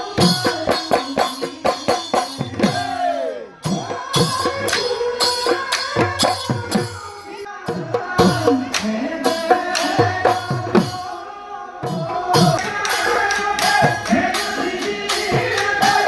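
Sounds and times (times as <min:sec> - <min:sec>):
jingling percussion: 0:00.0 - 0:03.0, 0:03.6 - 0:11.2, 0:11.8 - 0:16.0.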